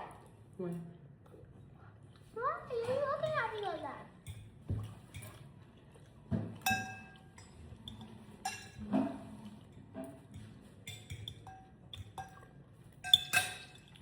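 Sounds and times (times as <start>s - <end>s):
cutlery and dishes clinking: 6.5s - 9.4s, 10.0s - 14.0s.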